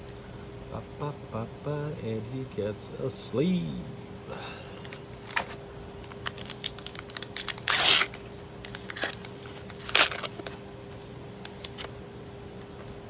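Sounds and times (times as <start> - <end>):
plastic crinkling and rustling: 4.8 - 10.7, 11.3 - 12.0.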